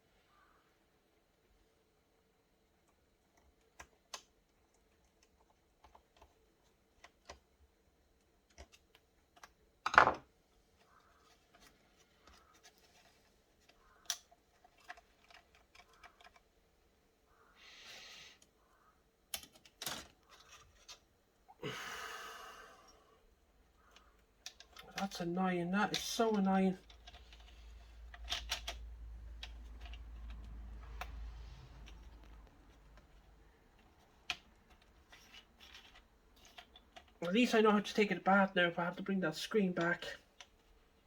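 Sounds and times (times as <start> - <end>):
small plastic clicks and taps: 2.8 - 7.5, 13.6 - 16.5.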